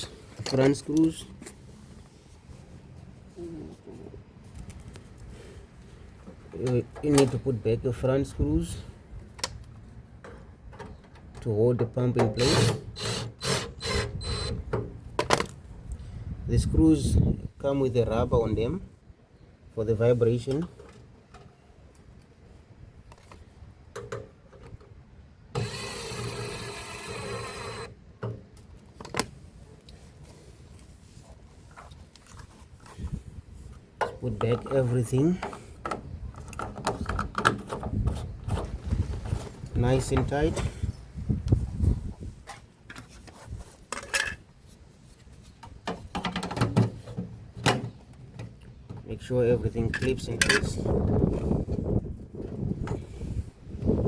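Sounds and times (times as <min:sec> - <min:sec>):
cordless drill driving screw: 0:12.4 - 0:14.6, 0:25.6 - 0:27.9
plastic and metal parts clattering: 0:34.0 - 0:40.8, 0:45.6 - 0:49.1.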